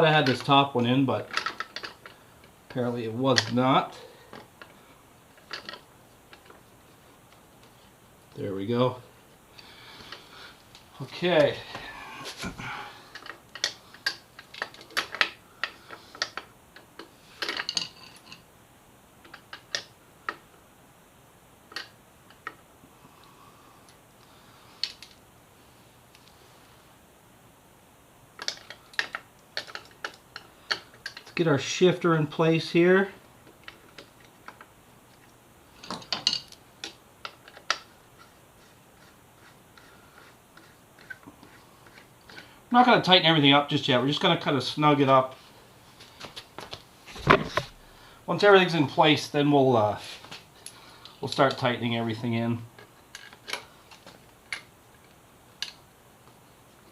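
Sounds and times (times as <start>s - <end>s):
metallic clicks of parts handled: 5.4s - 6.6s, 13.1s - 18.4s, 28.4s - 31.4s, 33.4s - 37.9s.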